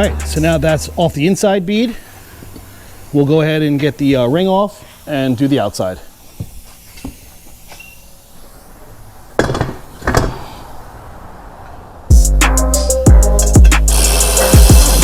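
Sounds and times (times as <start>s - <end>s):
music with heavy drum beat: 0.0s - 0.7s, 12.1s - 15.0s.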